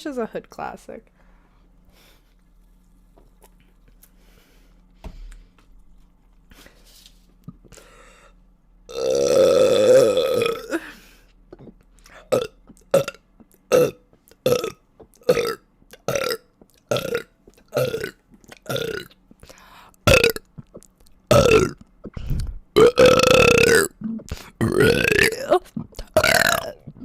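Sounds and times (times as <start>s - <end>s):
woman burping: 8.9s - 11.0s, 12.3s - 17.2s, 17.8s - 19.1s, 20.1s - 20.7s, 21.3s - 22.2s, 22.8s - 27.0s.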